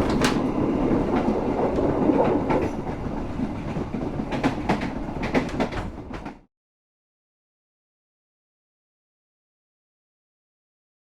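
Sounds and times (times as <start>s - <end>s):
wheels clacking over rail joints: 0.0s - 6.4s
train rumbling on rails: 0.0s - 6.5s.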